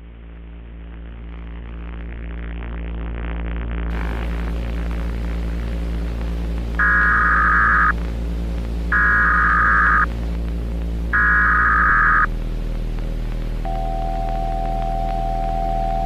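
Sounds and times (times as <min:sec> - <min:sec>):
steady low drone: 0:00.0 - 0:16.0
warbling digital data tones: 0:06.8 - 0:08.0, 0:08.9 - 0:10.1, 0:11.1 - 0:12.3.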